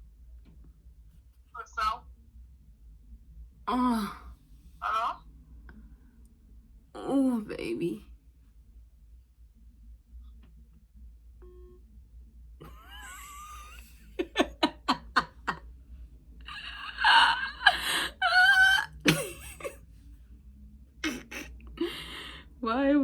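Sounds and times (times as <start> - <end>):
laugh-like bursts: 12.6 - 15.6, 16.5 - 19.8, 21.0 - 22.3
drawn-out cries: 16.5 - 19.1.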